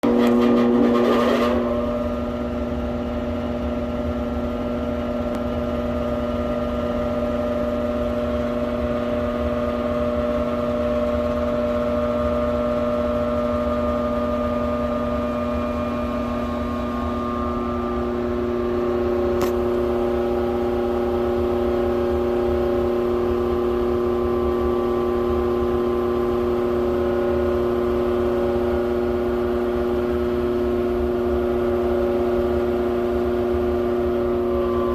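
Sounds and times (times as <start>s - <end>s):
blower fan humming: 0.0s - 7.0s, 14.2s - 34.9s.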